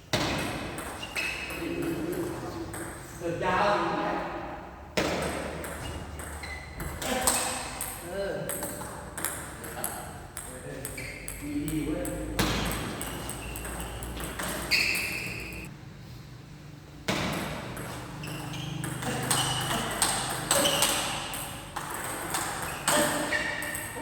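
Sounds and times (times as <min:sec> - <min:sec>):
shoe soles squeaking: 0:00.1 - 0:03.2, 0:05.3 - 0:08.0, 0:08.7 - 0:11.6, 0:12.3 - 0:15.7, 0:17.6 - 0:24.0.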